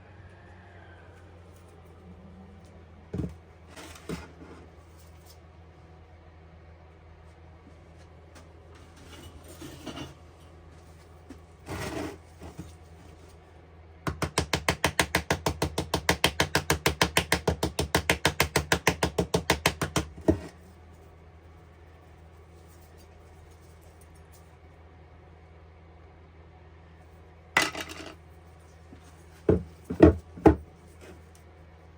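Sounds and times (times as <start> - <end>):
handling noises: 2.6 - 5.4.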